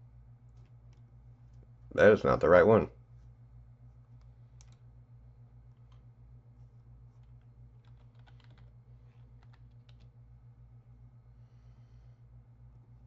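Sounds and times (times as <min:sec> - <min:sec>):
low steady hum: 0:00.0 - 0:13.0
typing on computer keyboard: 0:07.8 - 0:08.7, 0:09.4 - 0:10.1.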